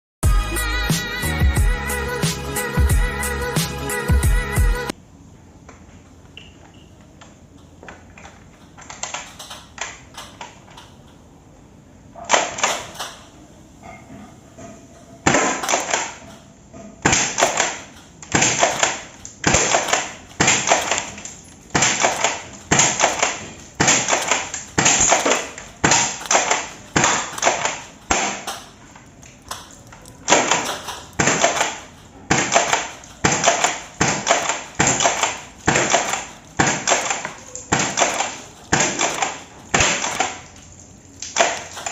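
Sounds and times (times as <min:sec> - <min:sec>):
airsoft shotgun sharp clacks: 0:17.0 - 0:28.7, 0:30.3 - 0:40.5.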